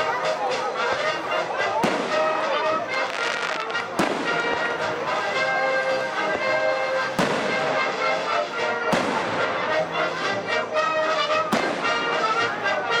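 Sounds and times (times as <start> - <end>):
music: 0.0 - 13.0
fireworks bursting: 1.8 - 4.6, 7.2 - 7.7, 8.9 - 9.4, 11.5 - 11.9.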